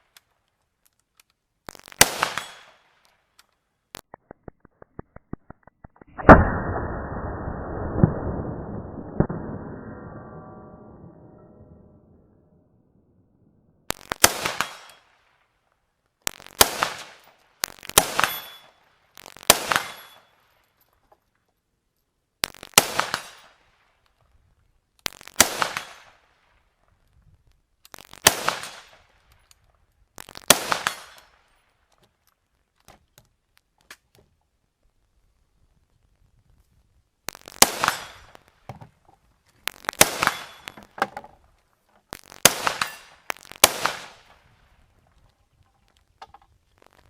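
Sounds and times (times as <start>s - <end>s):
rifle shots echoing: 2.0s - 2.8s, 13.9s - 14.9s, 16.3s - 18.6s, 19.4s - 20.2s, 25.4s - 26.1s, 28.2s - 29.0s, 30.3s - 31.2s, 37.4s - 38.4s, 39.7s - 41.0s, 42.2s - 44.3s.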